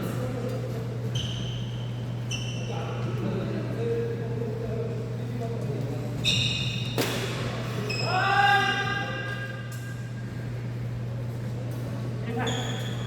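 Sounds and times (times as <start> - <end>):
court shoes squealing: 1.0 - 3.1, 6.2 - 9.7, 12.3 - 13.0.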